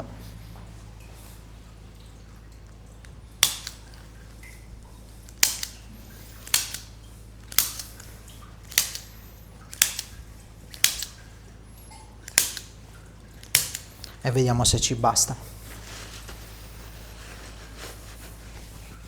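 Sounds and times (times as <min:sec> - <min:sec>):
small clicks: 0:03.0 - 0:04.6, 0:05.2 - 0:14.2.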